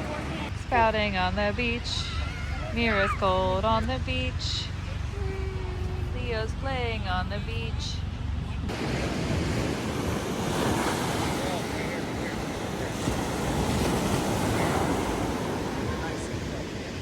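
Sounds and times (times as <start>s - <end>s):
wind buffeting microphone: 0.0s - 17.0s
ocean surf breaking: 8.7s - 17.0s.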